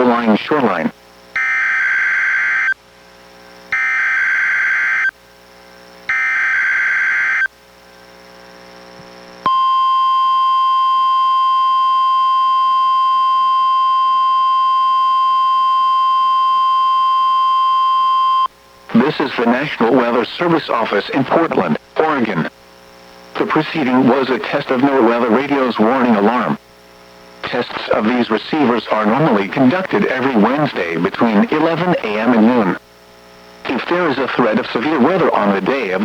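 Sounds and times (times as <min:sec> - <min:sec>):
steady warning alarm tone: 0:01.4 - 0:02.8, 0:03.7 - 0:05.2, 0:06.1 - 0:07.5, 0:09.5 - 0:20.6.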